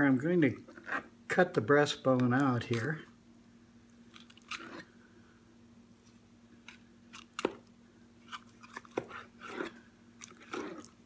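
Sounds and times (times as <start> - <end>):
knife crunching through bone: 4.1 - 4.9, 8.2 - 11.0.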